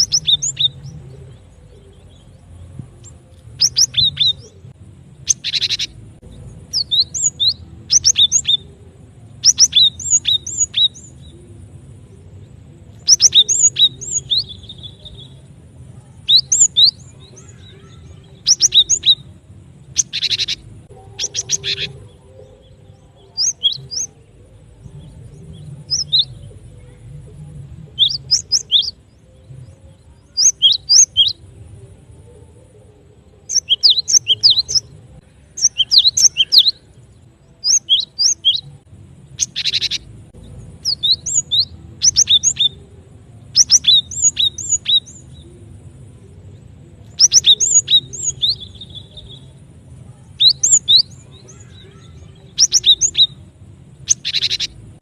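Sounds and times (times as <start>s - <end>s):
bird chirping: 0.0s - 55.0s
harsh rattling bird call: 5.3s - 6.0s, 19.9s - 22.0s, 39.4s - 40.2s, 54.0s - 54.8s.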